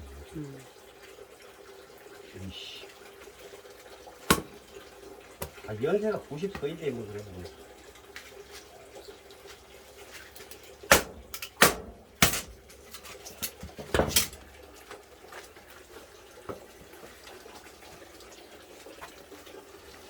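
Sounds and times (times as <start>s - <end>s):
firewood knocking: 4.3s - 4.7s, 5.4s - 5.7s, 6.4s - 6.9s, 10.9s - 14.4s.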